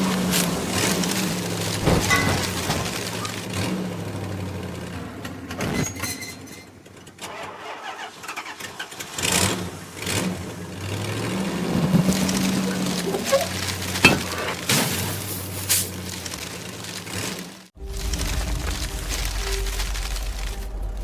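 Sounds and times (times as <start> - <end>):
low engine note: 9.6 - 21.0.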